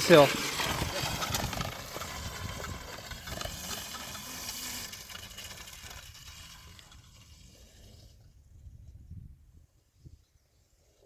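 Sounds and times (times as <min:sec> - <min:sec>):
wind rumbling on microphone: 0:00.0 - 0:03.8, 0:05.4 - 0:10.4
pit bike engine: 0:00.0 - 0:08.8.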